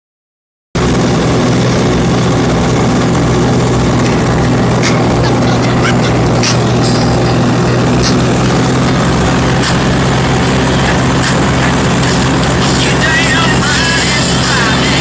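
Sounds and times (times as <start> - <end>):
tractor engine running: 0.8 - 15.0.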